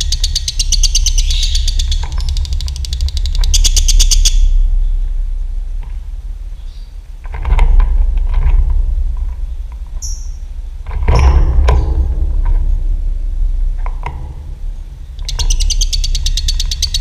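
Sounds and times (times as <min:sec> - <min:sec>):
bird chirping: 0:00.0 - 0:05.0, 0:06.5 - 0:07.0, 0:09.5 - 0:10.4, 0:15.1 - 0:17.0
steady low hum: 0:00.0 - 0:17.0.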